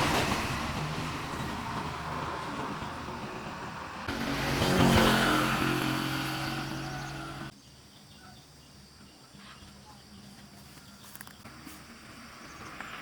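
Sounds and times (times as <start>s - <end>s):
engine running: 0.0s - 7.5s
faint outdoor background: 0.0s - 13.0s.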